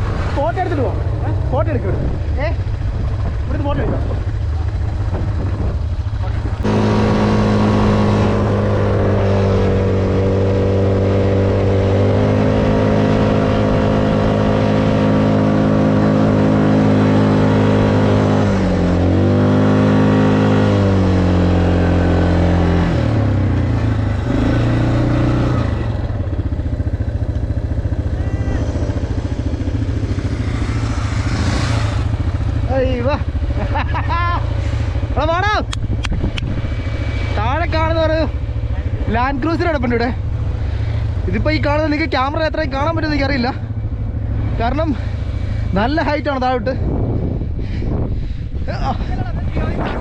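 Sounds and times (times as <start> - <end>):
atv engine running: 0.0 - 50.0.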